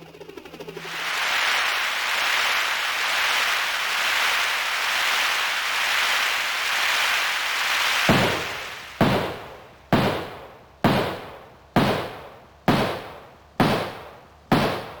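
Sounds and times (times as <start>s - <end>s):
synthesized gunshot bangs: 8.1s - 15.0s.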